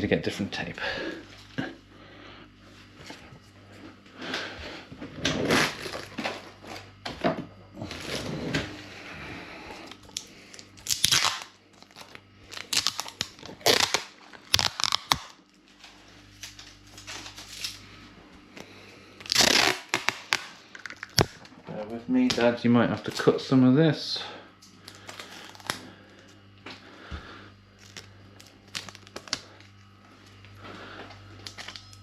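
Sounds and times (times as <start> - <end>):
adhesive tape tearing and crinkling: 5.3 - 6.8, 9.8 - 17.8, 19.2 - 21.5, 24.8 - 25.8, 27.8 - 29.8, 31.4 - 32.0.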